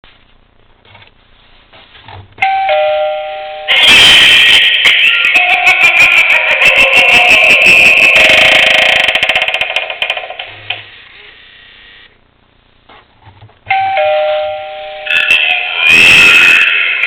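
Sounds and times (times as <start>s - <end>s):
two-note ding-dong chime: 2.4s - 3.7s, 13.7s - 15.1s
loud buzzy effect: 3.7s - 9.7s, 14.9s - 17.0s.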